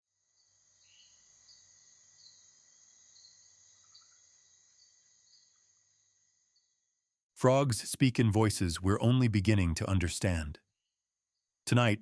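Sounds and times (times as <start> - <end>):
insect chirps: 0.1 - 7.2
insects trilling: 0.2 - 7.0.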